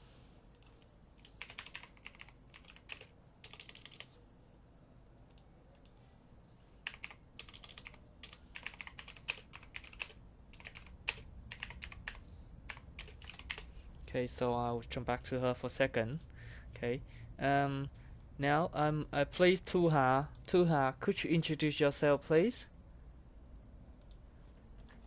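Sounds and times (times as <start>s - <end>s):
typing on computer keyboard: 0.5s - 4.2s, 6.8s - 13.7s.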